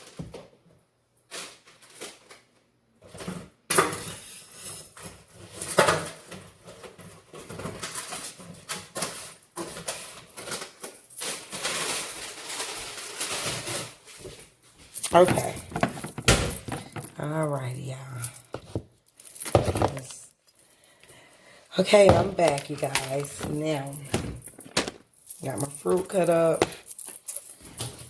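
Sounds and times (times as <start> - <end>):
knocks and clatter in kitchen: 15.1 - 17.2, 18.5 - 20.2, 21.9 - 25.1.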